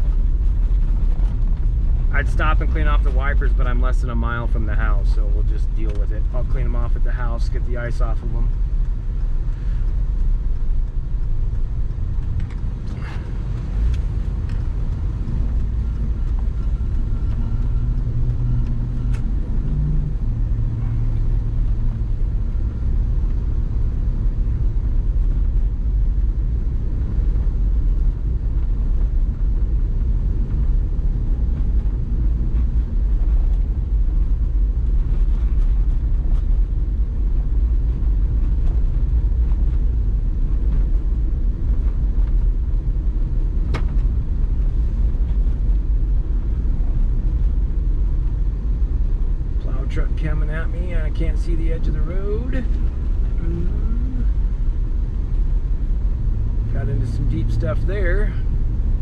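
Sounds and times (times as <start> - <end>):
vehicle engine rumble: 0.0 - 59.0.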